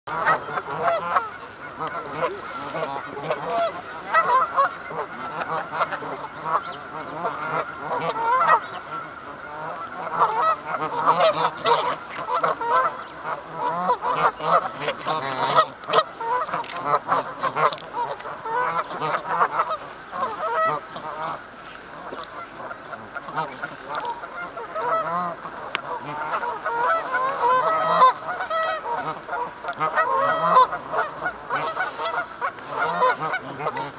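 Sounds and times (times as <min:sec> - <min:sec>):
geese honking: 0:00.1 - 0:33.9.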